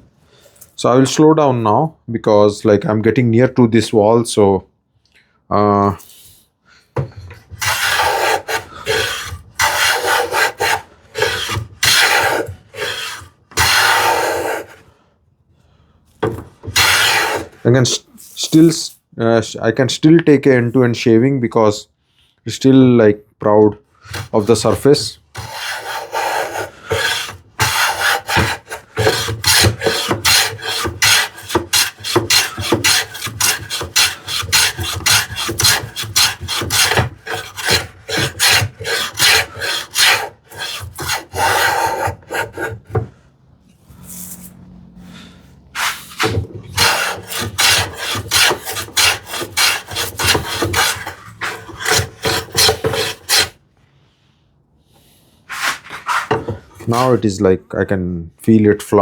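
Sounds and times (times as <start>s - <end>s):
hand plane shaving wood: 7.3s - 14.9s, 16.2s - 18.0s, 24.1s - 43.2s, 45.7s - 53.6s, 55.5s - 57.2s.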